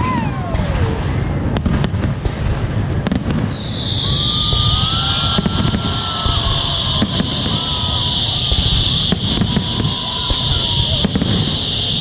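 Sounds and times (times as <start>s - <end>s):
firework bangs: 0.0s - 12.0s
firework whistle falling in pitch: 3.3s - 12.0s
loud steady hiss: 3.5s - 12.0s.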